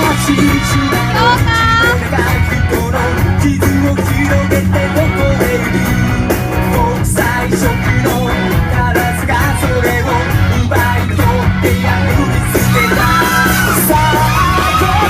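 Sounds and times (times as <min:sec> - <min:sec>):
rock band with singer: 0:00.0 - 0:15.0.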